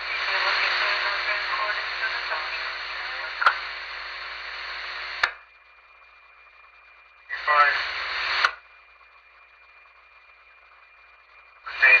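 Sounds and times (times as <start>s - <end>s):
garbled radio voice: 0.0s - 3.6s, 7.3s - 8.5s, 11.7s - 12.0s
radio squelch click: 0.0s - 5.5s, 7.3s - 8.6s
radio static hiss: 0.0s - 12.0s.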